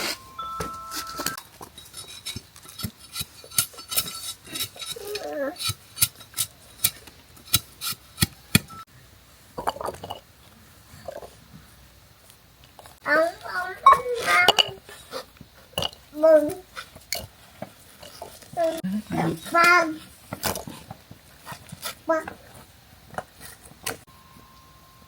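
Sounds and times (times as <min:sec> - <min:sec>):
utensils clinking on dishware: 0:13.8 - 0:14.8.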